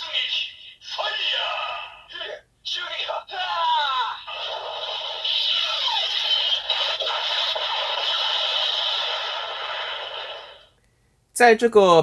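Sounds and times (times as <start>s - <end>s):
toy sword electronic sound effect: 4.6s - 10.5s.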